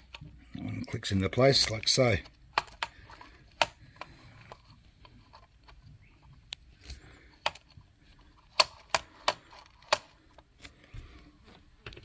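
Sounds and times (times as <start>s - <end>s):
small plastic parts clicking: 1.6s - 10.7s.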